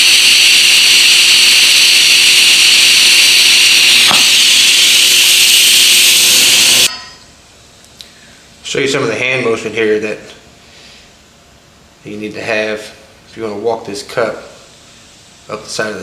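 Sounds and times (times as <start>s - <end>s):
welding arc hissing: 0.0s - 6.9s.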